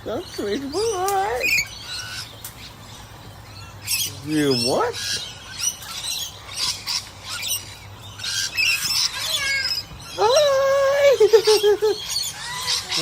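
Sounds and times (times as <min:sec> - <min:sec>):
lorikeet screechy squawks: 0:00.1 - 0:13.0.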